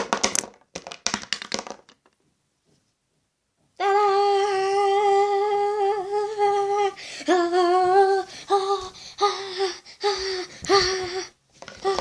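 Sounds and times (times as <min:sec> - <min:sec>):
girl humming: 0:03.8 - 0:12.0.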